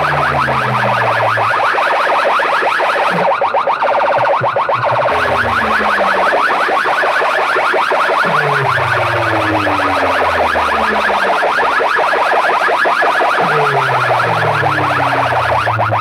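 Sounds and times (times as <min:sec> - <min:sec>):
long falling bass tones: 0:00.0 - 0:01.6, 0:04.2 - 0:06.4, 0:08.2 - 0:11.8, 0:13.4 - 0:16.0
siren-like upward sweeps: 0:00.0 - 0:16.0.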